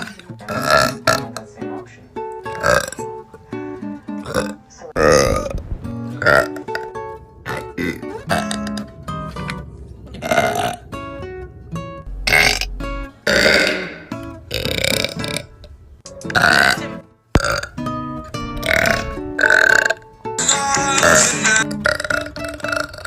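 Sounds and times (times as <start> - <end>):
guitar background music: 0.0 - 23.0
girl burping loudly: 4.2 - 5.6, 12.2 - 15.6, 16.3 - 17.8, 18.6 - 20.0, 20.9 - 23.0.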